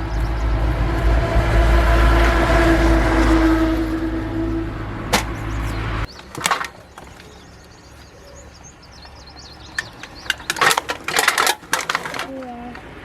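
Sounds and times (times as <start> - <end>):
faint bird chirps: 5.5 - 10.7.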